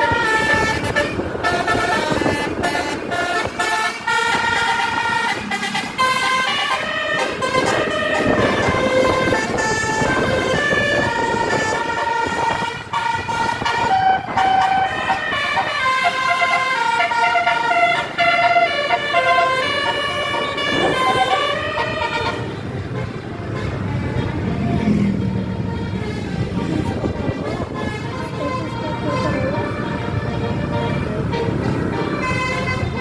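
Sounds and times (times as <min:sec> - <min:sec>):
musical air horns playing tune: 0:00.0 - 0:24.6, 0:25.5 - 0:33.0
bus engines running: 0:00.0 - 0:33.0.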